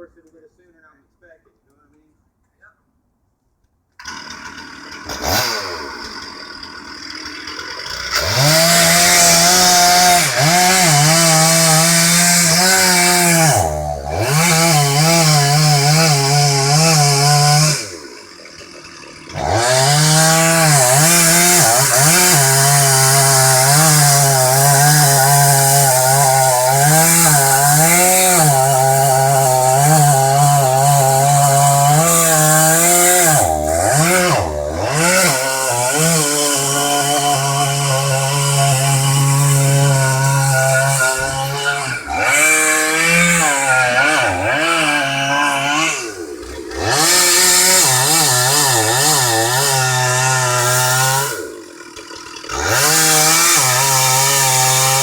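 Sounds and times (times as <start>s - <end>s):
chainsaw cutting tree trunk: 4.0s - 55.0s.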